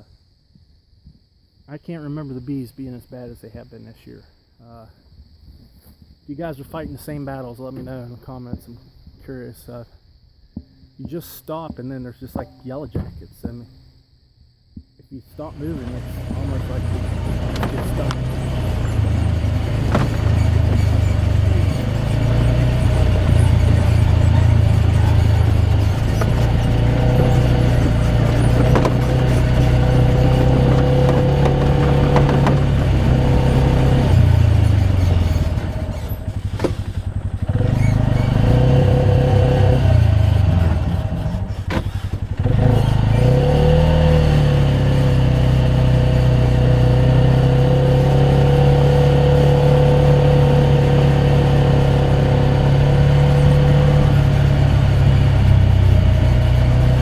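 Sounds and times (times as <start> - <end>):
engine running: 15.3 - 57.0.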